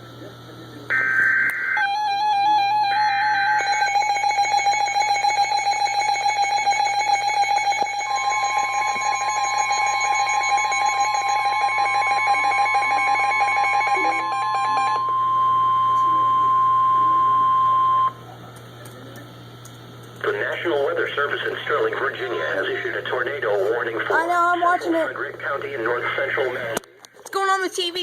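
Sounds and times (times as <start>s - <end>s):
rapid alarm beeps: 0.9s - 18.2s
steady warning alarm tone: 0.9s - 18.2s.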